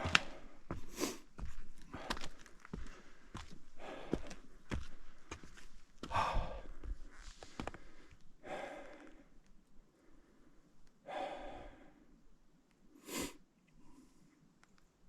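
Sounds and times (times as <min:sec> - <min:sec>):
footsteps on trail: 0:00.0 - 0:08.2
person breathing hard: 0:00.0 - 0:12.2.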